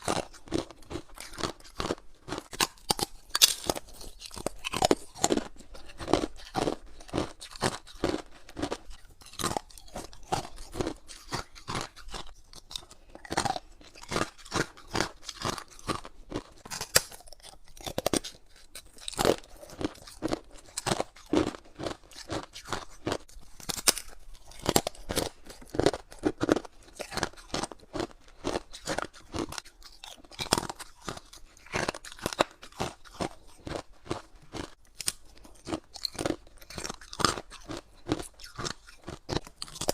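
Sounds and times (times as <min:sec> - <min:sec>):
person crunching ice: 0:00.0 - 0:39.9.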